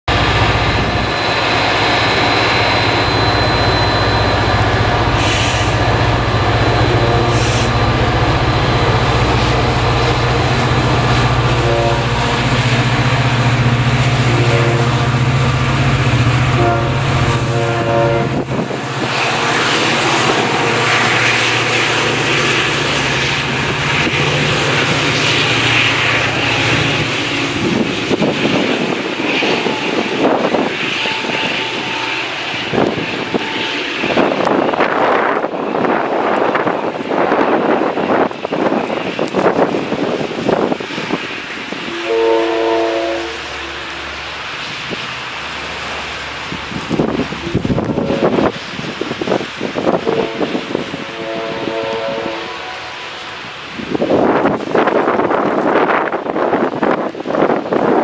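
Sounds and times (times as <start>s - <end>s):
diesel locomotive engine drone: 0.1s - 58.0s
train horn blasts: 3.1s - 8.0s, 9.2s - 23.0s, 29.4s - 35.4s, 41.8s - 44.2s, 47.4s - 48.6s, 49.9s - 53.5s.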